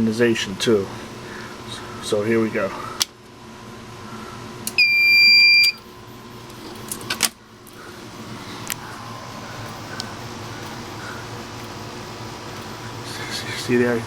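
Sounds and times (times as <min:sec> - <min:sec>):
high alarm beep: 0:04.8 - 0:05.8.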